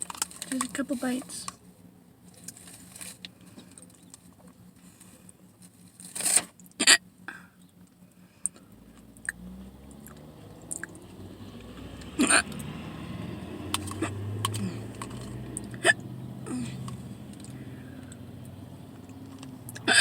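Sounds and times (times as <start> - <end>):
person hiccuping: 6.8 - 7.1, 12.2 - 12.5, 15.7 - 16.8, 19.8 - 20.0.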